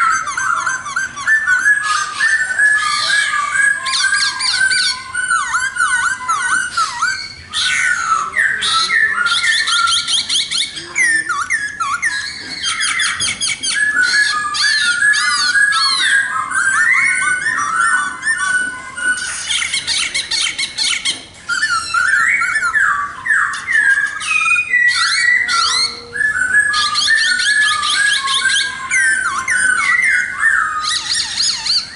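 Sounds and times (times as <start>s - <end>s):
bird singing whistled trills: 0.0s - 31.9s.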